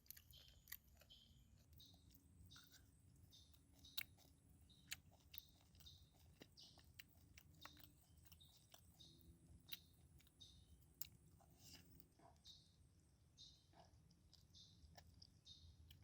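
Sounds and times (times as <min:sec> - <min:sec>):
wet chewing with mouth clicks: 0:00.0 - 0:12.6, 0:13.4 - 0:16.0.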